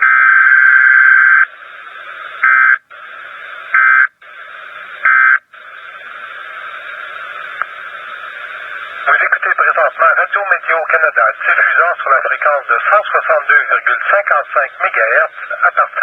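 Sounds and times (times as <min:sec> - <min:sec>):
radio hiss: 0:01.2 - 0:16.0.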